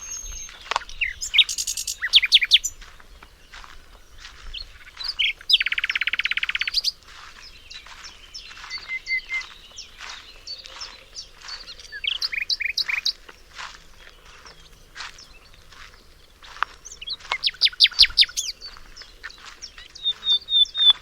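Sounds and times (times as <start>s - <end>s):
loud fast bird trill: 0.0s - 2.8s, 5.0s - 7.0s, 17.1s - 18.8s
songbirds singing and chirping: 0.0s - 21.0s.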